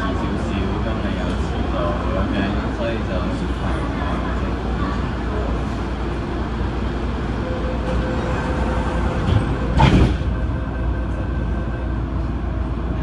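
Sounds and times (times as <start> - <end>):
train wheels rumbling on track: 0.0 - 13.0
train clatter: 7.9 - 10.6.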